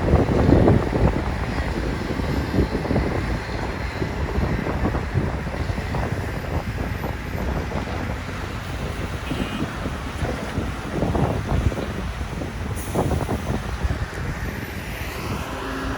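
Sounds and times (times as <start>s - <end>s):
excavator diesel engine rumbling: 0.0s - 15.9s
wind buffeting microphone: 0.0s - 15.9s.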